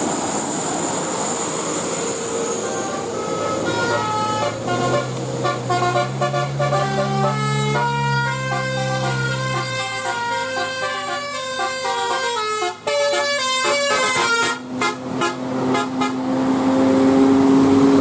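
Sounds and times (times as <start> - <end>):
multi-tone musical bus horn: 2.4 - 16.5.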